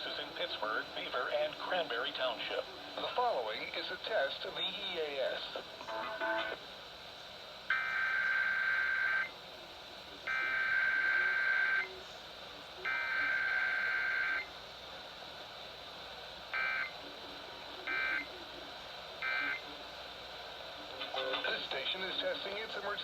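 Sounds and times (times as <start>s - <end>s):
data tone bursts: 16.6s - 17.0s.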